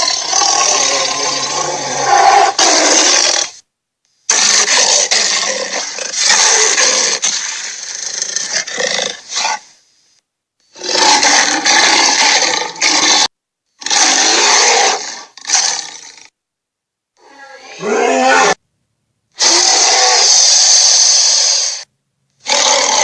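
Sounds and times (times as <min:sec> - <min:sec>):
dinosaur roars: 0:00.0 - 0:03.5, 0:17.2 - 0:18.6.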